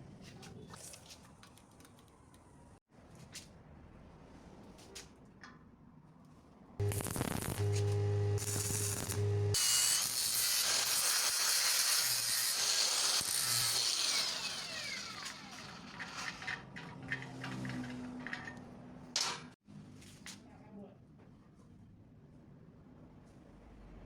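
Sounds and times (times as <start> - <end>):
power tool motor humming: 6.9 - 15.8.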